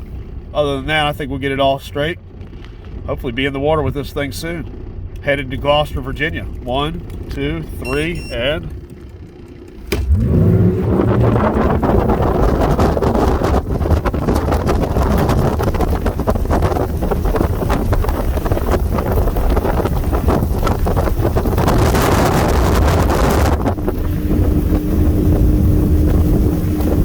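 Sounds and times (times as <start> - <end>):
outboard motors running: 0.0 - 27.0
steady hum: 3.5 - 14.4
wind buffeting on microphone: 10.0 - 27.0.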